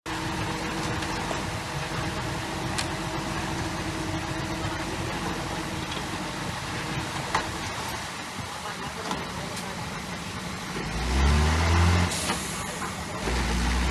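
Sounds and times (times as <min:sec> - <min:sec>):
diesel engine running: 0:00.0 - 0:13.9.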